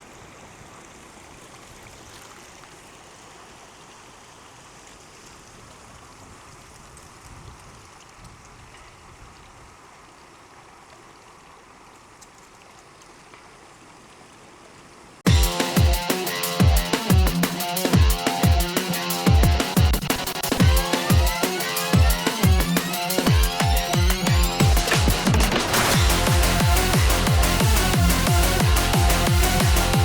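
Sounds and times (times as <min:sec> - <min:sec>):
faint water splashes: 0:00.0 - 0:15.2
stream running: 0:00.0 - 0:15.2.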